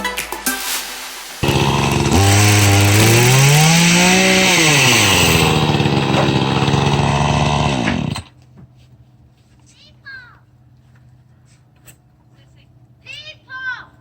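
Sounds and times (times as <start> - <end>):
chainsaw running: 1.4 - 8.3.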